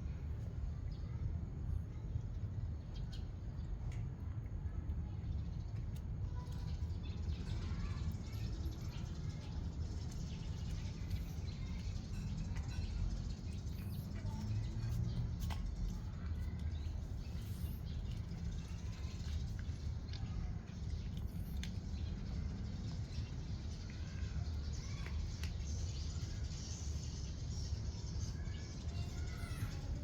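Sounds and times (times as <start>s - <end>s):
faint bird chirps: 5.0s - 30.0s.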